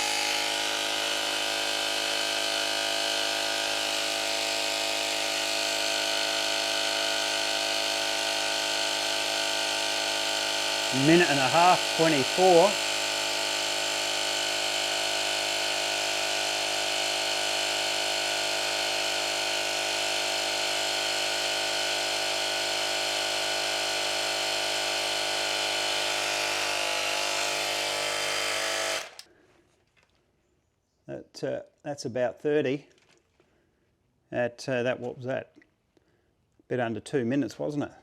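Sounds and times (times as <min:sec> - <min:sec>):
mini air compressor buzzing: 0:00.0 - 0:29.3.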